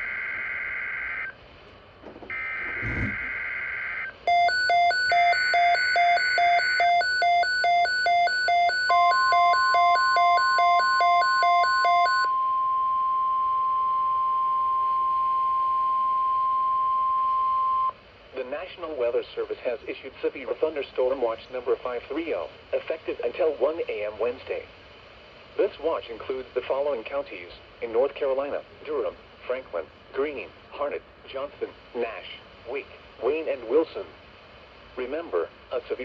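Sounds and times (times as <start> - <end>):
steady warning alert tone: 2.4 - 3.4
screeching digital bursts: 2.4 - 4.0.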